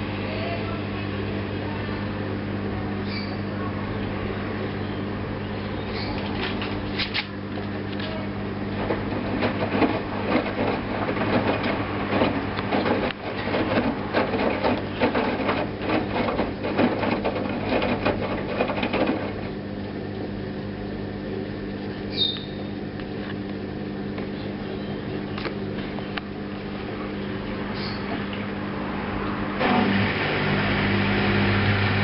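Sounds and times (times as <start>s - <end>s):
washing machine drum churning: 6.1s - 20.9s, 28.0s - 32.0s.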